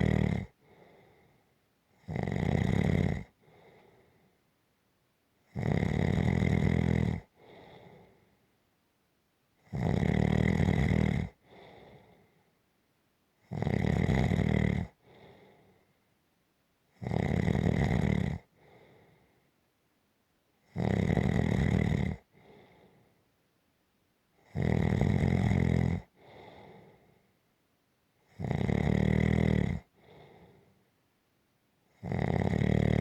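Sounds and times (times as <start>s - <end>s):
loud snoring: 0.0s - 1.0s, 2.0s - 3.4s, 5.5s - 8.1s, 9.6s - 12.1s, 13.4s - 15.4s, 17.0s - 18.5s, 20.7s - 22.6s, 24.4s - 27.0s, 28.3s - 30.6s, 31.9s - 33.0s
soft breath: 0.5s - 1.6s, 3.4s - 4.5s, 7.3s - 8.5s, 11.4s - 12.6s, 15.0s - 16.2s, 18.5s - 19.6s, 22.3s - 23.3s, 26.1s - 27.4s, 29.8s - 30.9s.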